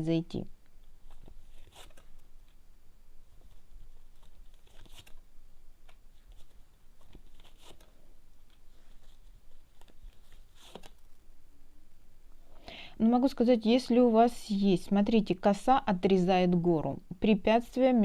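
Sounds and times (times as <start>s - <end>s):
playing cards rustling and clicking: 1.0s - 2.6s, 3.4s - 11.2s.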